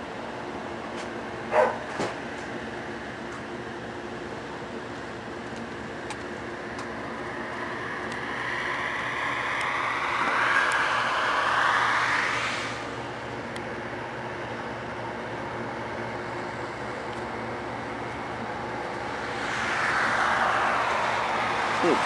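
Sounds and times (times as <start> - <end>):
harvest machinery engine drone: 0.0 - 22.0
rushing noise: 5.8 - 22.0.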